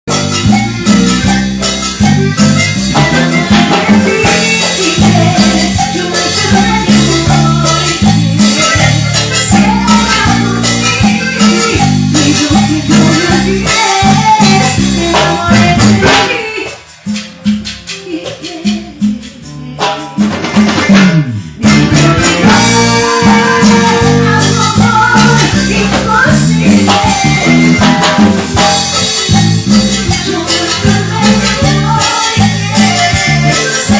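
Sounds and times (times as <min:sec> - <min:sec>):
bass line: 0:00.0 - 0:33.9
live latin dance band: 0:00.1 - 0:33.9
shakers: 0:00.3 - 0:21.0.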